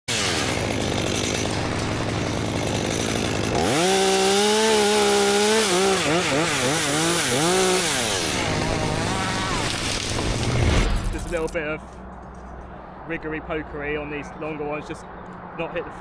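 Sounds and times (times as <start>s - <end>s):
chainsaw idling and revving: 0.1s - 10.6s.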